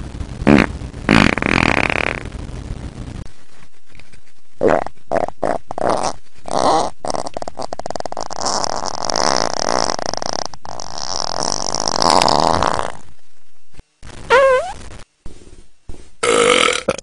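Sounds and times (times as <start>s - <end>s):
farts: 0.4s - 2.3s, 4.6s - 13.1s, 14.3s - 14.8s, 16.2s - 17.0s.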